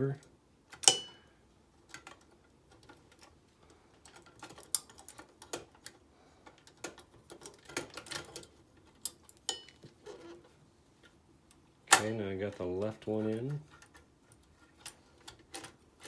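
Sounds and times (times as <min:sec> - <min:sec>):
ringing metal clink: 0:00.9 - 0:01.2, 0:09.5 - 0:09.8.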